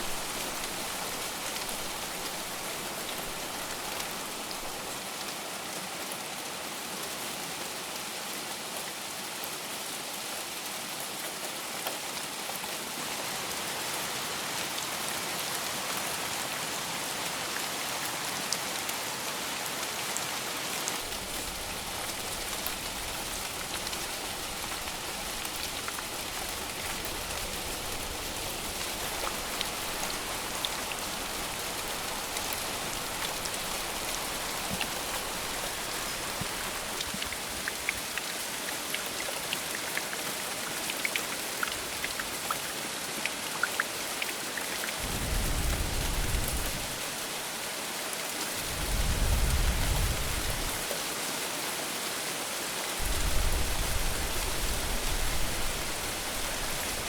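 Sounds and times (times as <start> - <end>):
heavy rain falling: 0.0 - 5.5, 15.7 - 42.8, 43.7 - 51.7, 52.8 - 57.0.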